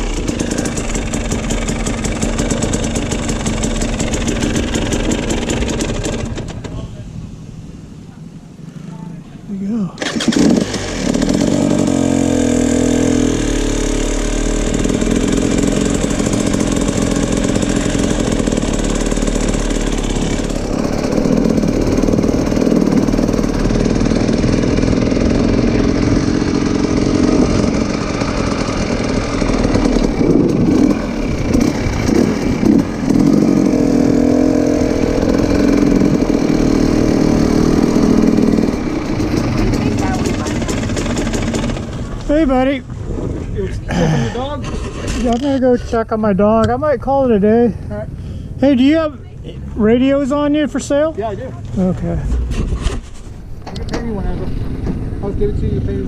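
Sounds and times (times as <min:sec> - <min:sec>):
vehicle engine revving: 0:00.0 - 0:06.8, 0:08.6 - 0:43.6.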